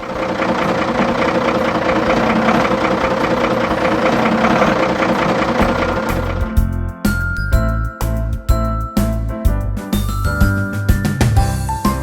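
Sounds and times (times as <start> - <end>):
deeper rumble: 0.0 - 6.8
heavy truck engine idling: 0.0 - 6.9.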